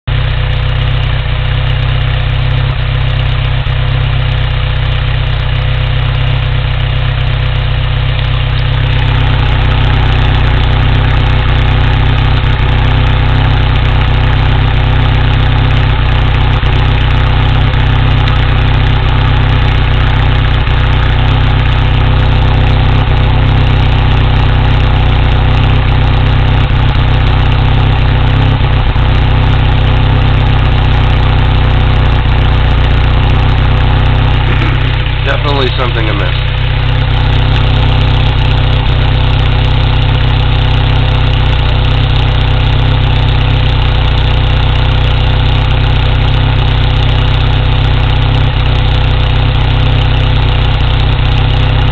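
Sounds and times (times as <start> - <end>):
car engine idling: 0.0 - 51.9.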